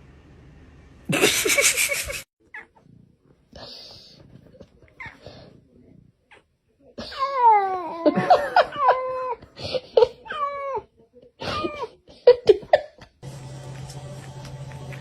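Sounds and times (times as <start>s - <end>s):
music: 13.2s - 15.0s.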